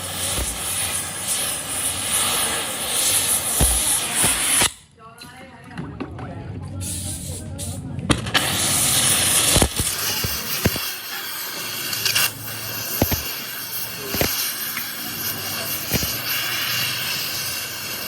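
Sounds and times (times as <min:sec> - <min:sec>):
steady hissing noise: 0:08.4 - 0:18.0
sharp knocks: 0:13.0 - 0:13.3.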